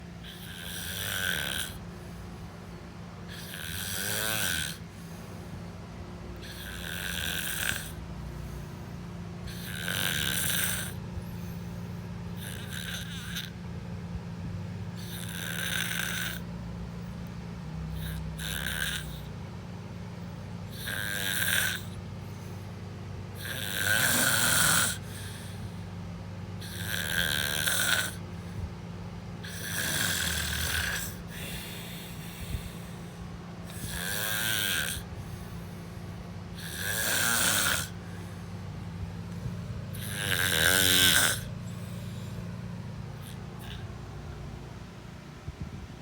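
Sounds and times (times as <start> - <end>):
steady low hum: 0.0 - 46.0
person snoring: 0.2 - 1.8, 3.3 - 4.8, 6.4 - 8.1, 9.4 - 11.0, 12.4 - 13.6, 15.0 - 16.5, 17.9 - 19.3, 20.7 - 22.0, 23.4 - 25.7, 26.6 - 28.2, 29.4 - 35.8, 36.5 - 43.9.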